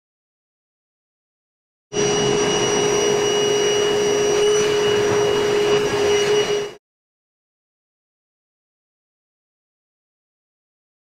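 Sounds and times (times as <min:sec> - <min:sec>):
vacuum motor whining: 0:02.0 - 0:06.8.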